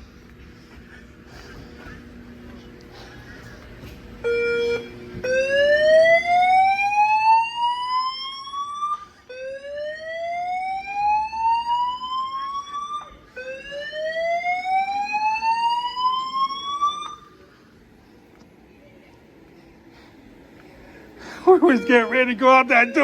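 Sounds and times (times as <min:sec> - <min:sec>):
fire alarm whoop tone: 0:04.2 - 0:17.3, 0:21.5 - 0:23.0.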